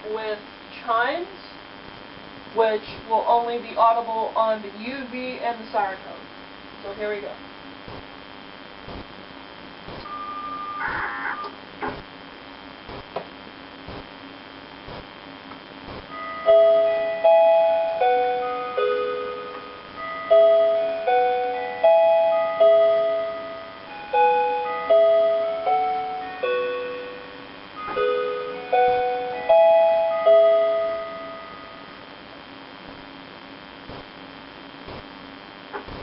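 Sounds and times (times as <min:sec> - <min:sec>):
electronic siren chime notes: 0:10.1 - 0:11.6, 0:16.1 - 0:31.9.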